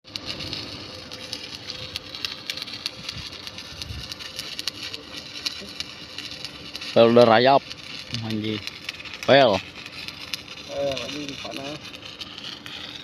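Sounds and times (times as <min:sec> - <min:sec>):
arc welding crackle: 0:00.0 - 0:13.0.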